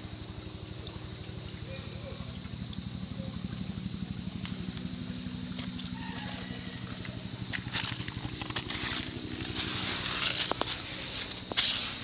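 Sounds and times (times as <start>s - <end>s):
high insect buzz: 0.0s - 12.0s
small engine humming: 0.0s - 12.0s
footsteps on dry leaves and stones: 7.4s - 12.0s.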